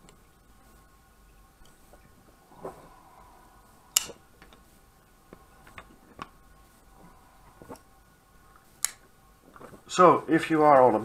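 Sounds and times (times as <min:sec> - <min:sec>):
folding knife clicks: 0:03.9 - 0:04.2.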